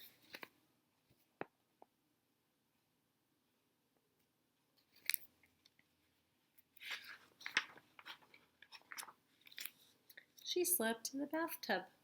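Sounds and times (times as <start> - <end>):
book pages turning: 0.0 - 0.6, 6.6 - 10.4.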